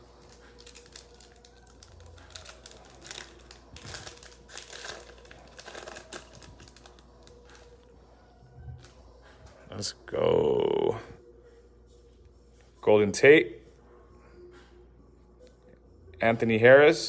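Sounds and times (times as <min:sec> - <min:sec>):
card packaging crinkling: 0:00.0 - 0:07.8.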